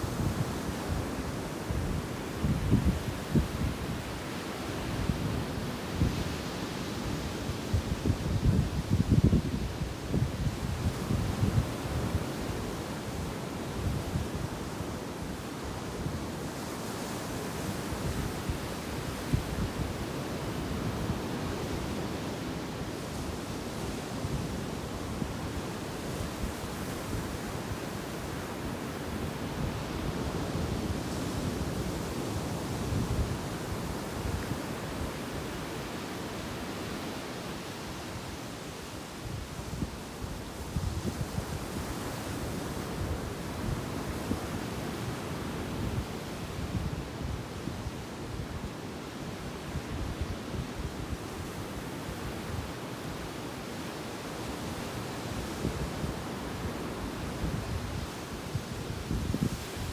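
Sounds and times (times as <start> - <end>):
wind on microphone: 0.0 - 14.8, 15.7 - 53.4, 54.5 - 59.9
waves rushing on beach: 0.0 - 59.9.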